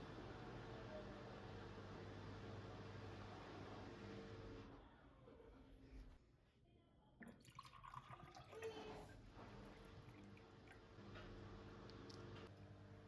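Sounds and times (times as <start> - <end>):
faint water sounds and clicks: 7.2 - 12.7.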